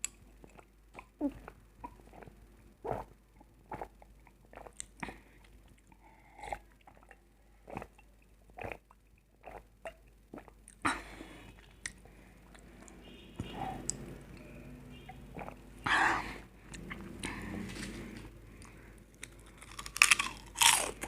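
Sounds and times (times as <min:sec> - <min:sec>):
person eating with crunches: 0:16.6 - 0:21.0.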